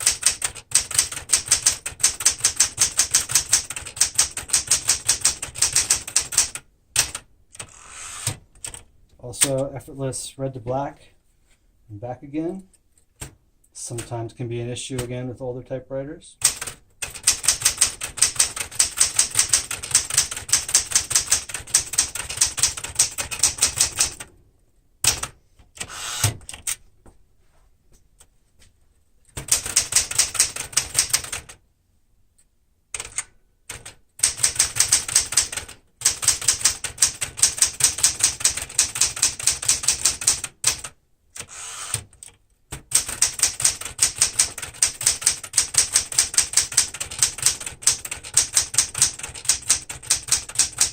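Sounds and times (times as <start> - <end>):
manual typewriter typing: 0.0 - 8.8, 13.2 - 14.3, 16.4 - 24.3, 25.0 - 26.8, 29.3 - 31.6, 33.0 - 50.9.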